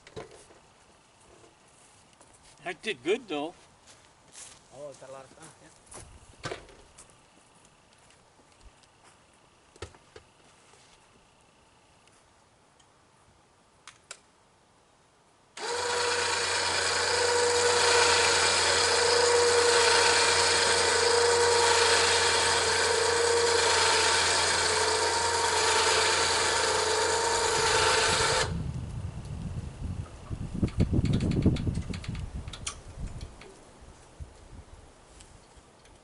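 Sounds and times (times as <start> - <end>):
log-milling saw whining: 15.6 - 28.6.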